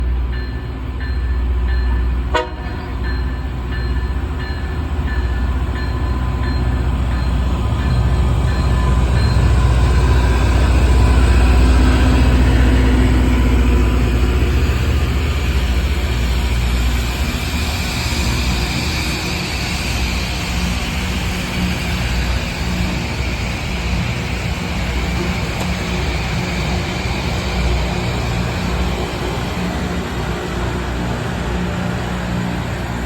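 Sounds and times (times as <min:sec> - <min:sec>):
railroad crossing bell ringing: 0:00.0 - 0:13.9
rail grinder train rumble: 0:00.0 - 0:33.0.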